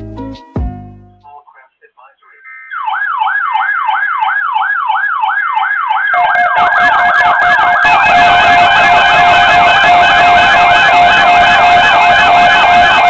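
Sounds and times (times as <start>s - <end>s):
electronic siren yelping: 2.6s - 13.0s
faster siren: 2.7s - 13.0s.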